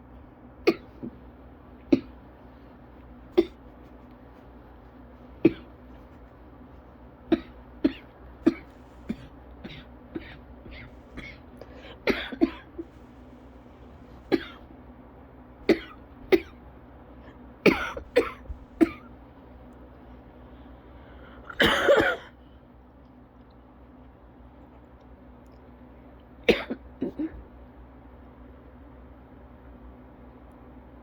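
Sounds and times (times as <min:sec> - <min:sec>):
long hacking cough: 0:00.6 - 0:01.2, 0:01.9 - 0:02.2, 0:03.3 - 0:03.7, 0:05.4 - 0:05.8, 0:07.3 - 0:12.9, 0:14.3 - 0:14.7, 0:15.7 - 0:16.6, 0:17.3 - 0:19.1, 0:21.5 - 0:22.4, 0:26.4 - 0:27.4
person coughing: 0:00.7 - 0:01.2, 0:01.9 - 0:02.2, 0:03.3 - 0:03.7, 0:05.4 - 0:05.8, 0:07.3 - 0:13.0, 0:14.3 - 0:14.7, 0:15.7 - 0:16.6, 0:17.6 - 0:19.1, 0:21.5 - 0:22.4, 0:26.5 - 0:27.4.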